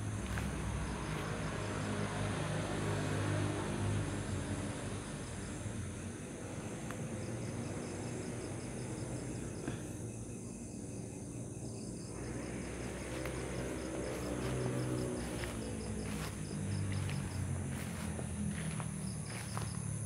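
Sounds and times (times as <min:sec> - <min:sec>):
crickets chirping: 0:00.0 - 0:20.0
high insect buzz: 0:00.0 - 0:20.0.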